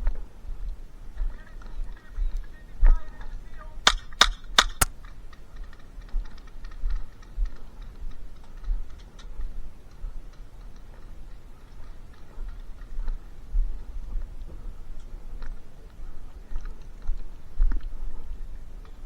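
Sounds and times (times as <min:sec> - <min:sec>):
airsoft gun shots: 0:03.9 - 0:04.9.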